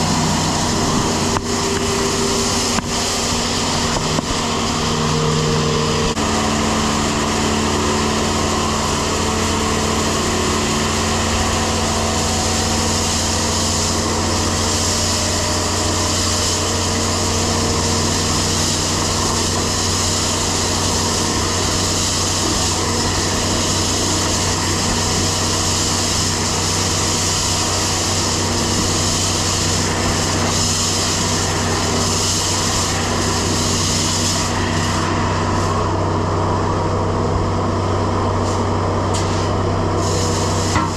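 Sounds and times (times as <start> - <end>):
grain vacuum machine drone: 0.0 - 40.9
broad hiss: 10.8 - 36.4, 38.3 - 40.9.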